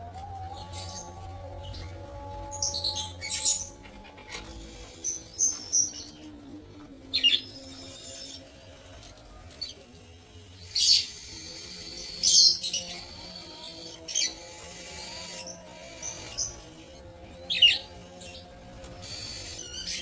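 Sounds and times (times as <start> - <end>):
budgerigars chirping: 7.2 - 20.0.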